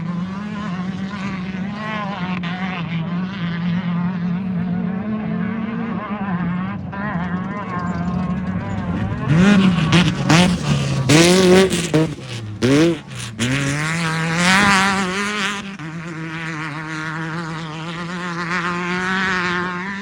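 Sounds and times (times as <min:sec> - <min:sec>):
race car engine revving: 0:00.0 - 0:20.0
rushes of noise: 0:06.6 - 0:19.7.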